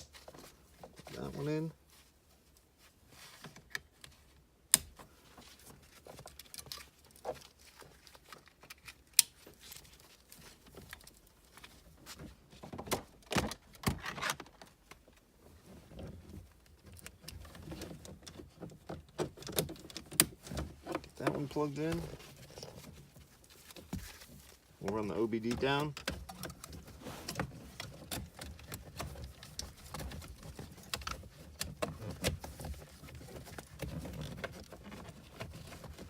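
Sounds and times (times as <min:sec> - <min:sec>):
plastic rustling: 0:05.1 - 0:36.0.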